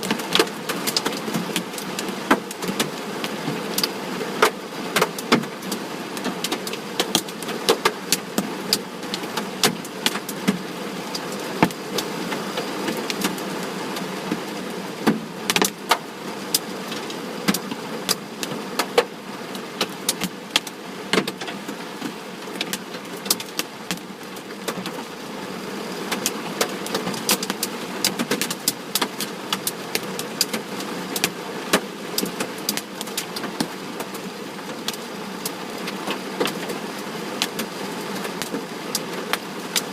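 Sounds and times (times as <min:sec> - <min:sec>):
hailstones striking a vehicle: 0:00.0 - 0:13.4.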